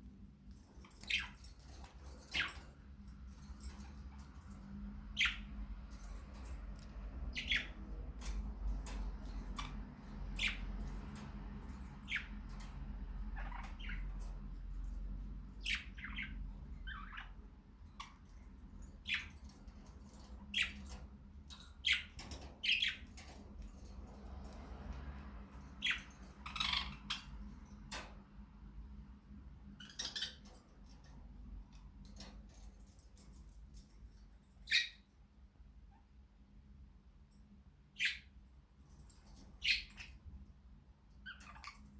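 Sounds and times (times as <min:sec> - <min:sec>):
low background hum: 0:00.0 - 0:41.9
budgerigars chirping and squawking: 0:00.9 - 0:02.8, 0:03.6 - 0:17.4, 0:18.0 - 0:21.0, 0:21.8 - 0:23.7, 0:25.8 - 0:27.5, 0:29.8 - 0:31.1, 0:34.6 - 0:35.1, 0:37.9 - 0:38.4, 0:39.3 - 0:40.3, 0:41.2 - 0:41.9.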